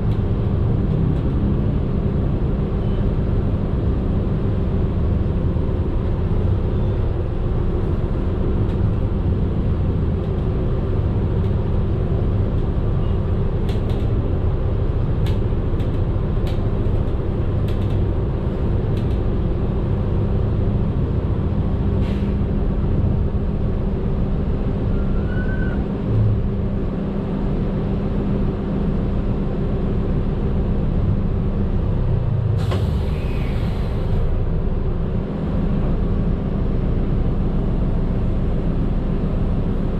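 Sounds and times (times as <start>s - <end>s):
bus engine and road drone: 0.0s - 39.9s
hiss of air: 32.6s - 34.3s.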